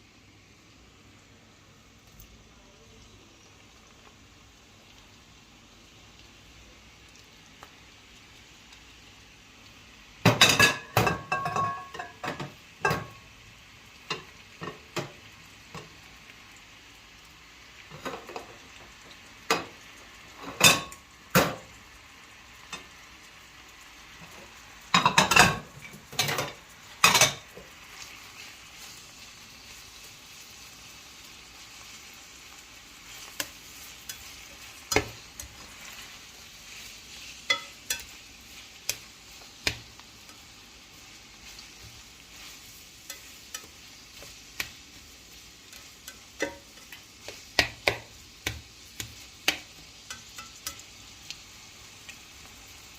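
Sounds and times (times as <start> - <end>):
food sizzling in a pot: 0.0 - 52.9
spoon clattering against pot: 37.5 - 38.1, 45.7 - 47.0.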